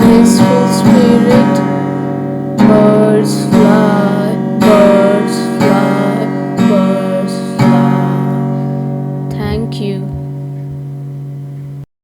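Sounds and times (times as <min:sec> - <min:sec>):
acoustic guitar strumming chords: 0:00.0 - 0:11.8.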